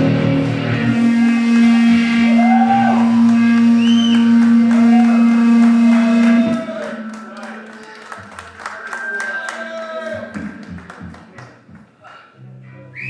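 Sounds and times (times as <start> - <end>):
live metal band: 0.0 - 7.2.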